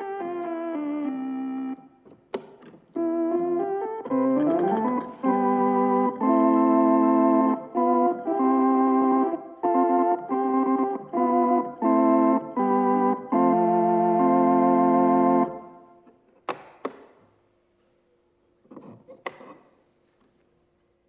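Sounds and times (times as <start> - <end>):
electronic organ playing: 0.0 - 16.1.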